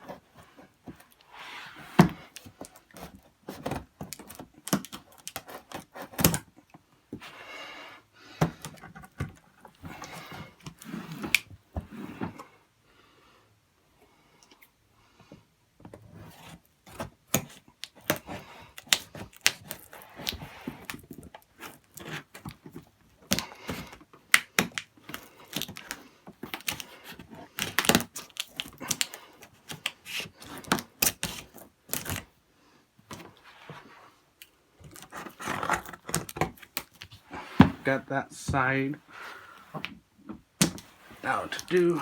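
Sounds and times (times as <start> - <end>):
packaging tearing: 17.3 - 22.6, 23.2 - 32.3, 41.2 - 42.0
cardboard box being opened: 34.8 - 37.8.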